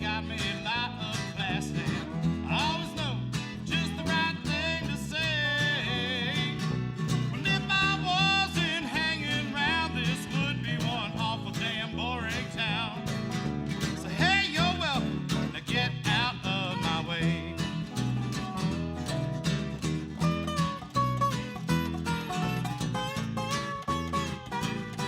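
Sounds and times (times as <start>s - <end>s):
strummed guitar: 0.0s - 25.0s
sliding lead melody: 16.9s - 25.0s.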